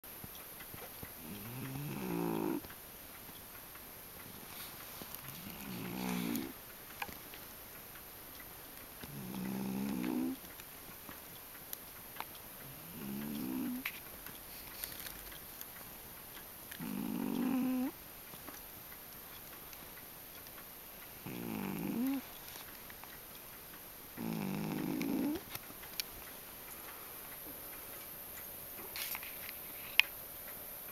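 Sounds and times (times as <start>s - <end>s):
pet snoring: 1.2s - 2.7s, 4.2s - 6.6s, 9.0s - 10.4s, 12.6s - 13.9s, 16.8s - 18.0s, 21.1s - 22.4s, 24.2s - 25.5s.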